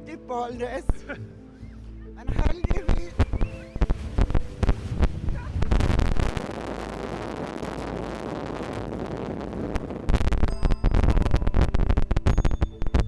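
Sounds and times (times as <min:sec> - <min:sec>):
wind buffeting microphone: 0:02.3 - 0:12.8
dense rush of wind: 0:03.4 - 0:10.4.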